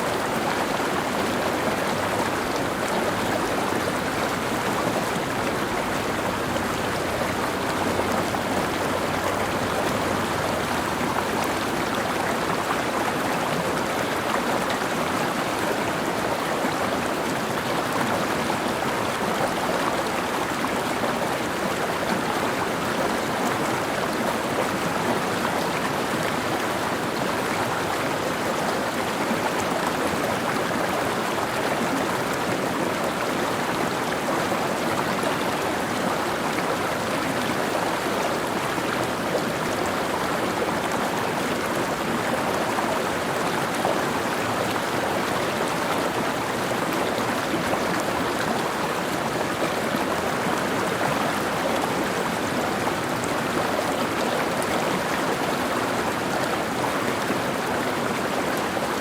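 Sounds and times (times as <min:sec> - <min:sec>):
stream flowing over rocks: 0:00.0 - 0:59.0.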